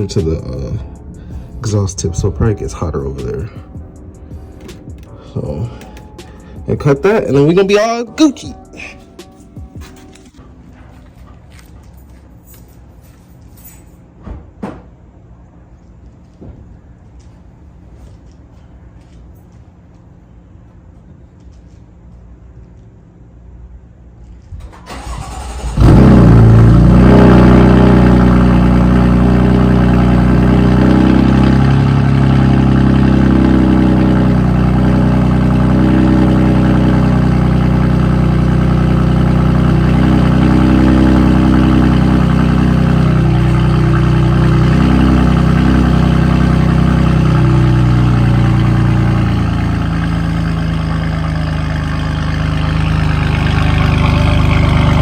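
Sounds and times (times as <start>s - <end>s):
car engine idling: 0.0s - 12.2s, 24.8s - 55.0s.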